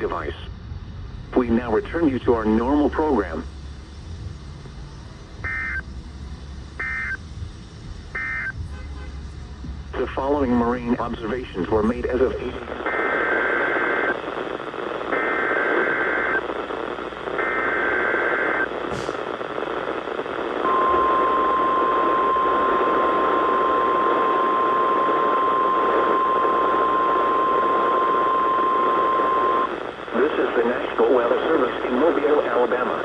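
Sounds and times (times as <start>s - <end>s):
radio static hiss: 0.0s - 33.0s
data header bursts: 1.4s - 8.9s, 9.9s - 33.0s
steady warning alarm tone: 5.4s - 8.7s, 20.6s - 29.7s.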